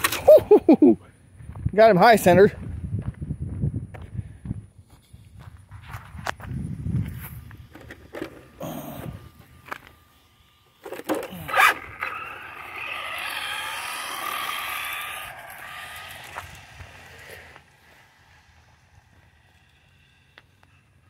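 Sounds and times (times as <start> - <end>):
electric motor whining: 6.2 - 21.0
toy car knocks and scrapes: 7.7 - 8.5, 10.8 - 17.6.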